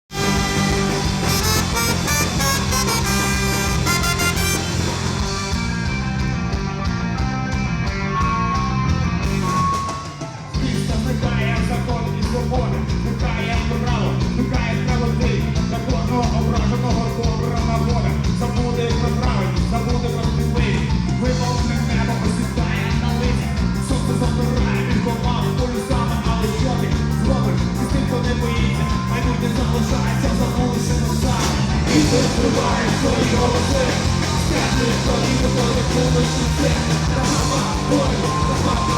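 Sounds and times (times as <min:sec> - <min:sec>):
drums: 0:00.0 - 0:38.9
sustained guitar lines: 0:00.1 - 0:10.7, 0:21.0 - 0:38.9
rock band playing live: 0:00.1 - 0:38.9.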